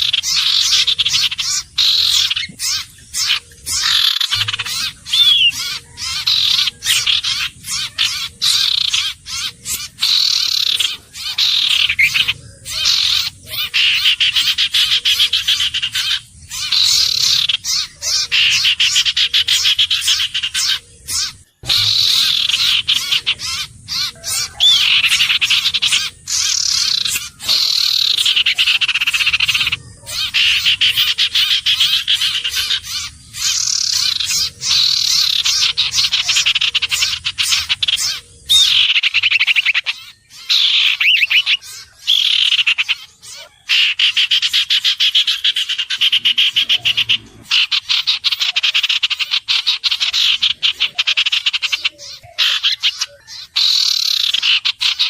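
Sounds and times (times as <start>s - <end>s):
bird slurred whistles: 3.2s - 7.2s.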